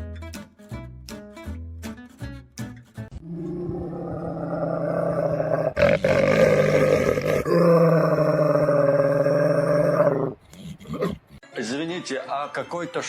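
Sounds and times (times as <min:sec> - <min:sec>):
animal growling call: 0:03.1 - 0:11.4.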